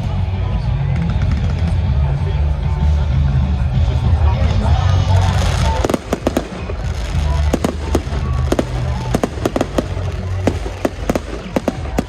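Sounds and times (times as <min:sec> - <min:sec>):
music with heavy bass: 0:00.0 - 0:12.0
fireworks bangs and cracks: 0:05.0 - 0:12.0.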